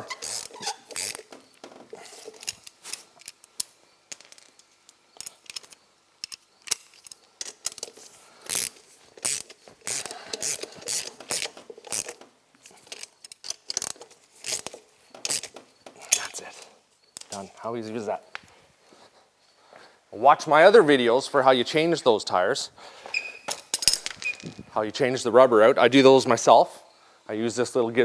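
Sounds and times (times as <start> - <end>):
ratchet wrench clicking: 0.0 - 1.3, 2.2 - 12.2, 12.9 - 16.3
metal tools clinking: 0.0 - 17.7, 23.1 - 24.7.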